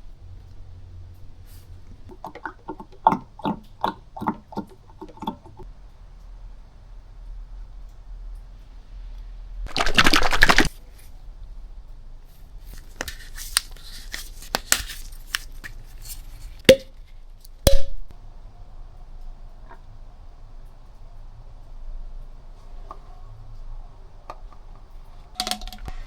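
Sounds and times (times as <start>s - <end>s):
rustling: 7.8s - 17.6s.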